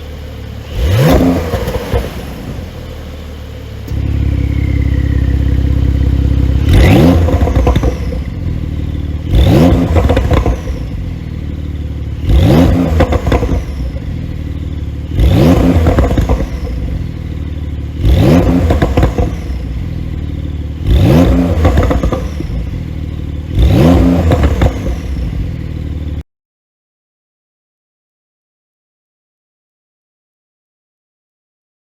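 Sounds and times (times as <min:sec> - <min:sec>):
car exhaust revving: 0:00.0 - 0:26.2
exhaust pops and crackles: 0:06.6 - 0:08.6, 0:09.3 - 0:11.0, 0:12.6 - 0:14.1, 0:15.3 - 0:17.2, 0:18.3 - 0:19.7, 0:21.2 - 0:22.7, 0:24.0 - 0:25.1.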